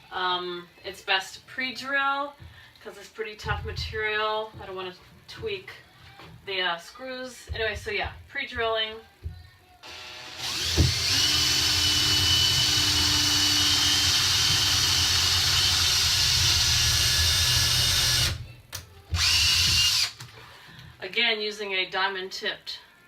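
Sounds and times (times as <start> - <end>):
power drill boring through board: 9.8 - 18.4, 19.2 - 20.2.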